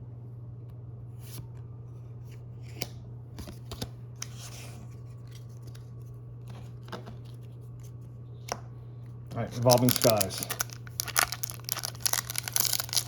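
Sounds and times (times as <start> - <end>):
steady low hum: 0.0 - 13.0
foil rustling: 9.5 - 13.0
cards clicking: 9.6 - 13.0.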